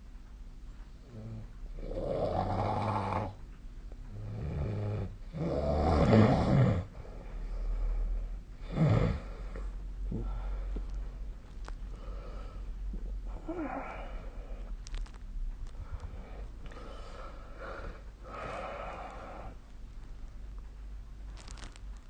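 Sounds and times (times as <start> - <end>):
rattling snores: 1.0 - 3.4, 4.1 - 10.6.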